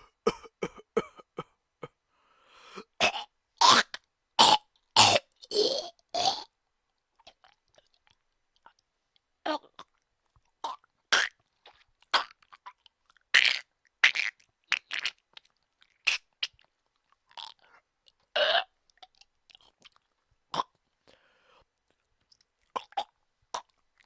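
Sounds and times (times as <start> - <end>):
person coughing: 0.0 - 2.0.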